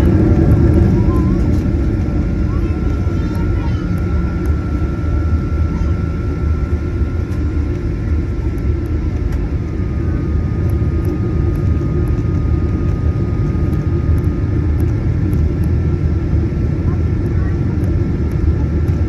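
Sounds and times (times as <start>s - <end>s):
airplane cabin rumble: 0.0s - 19.0s
thin steady whine: 0.0s - 19.0s.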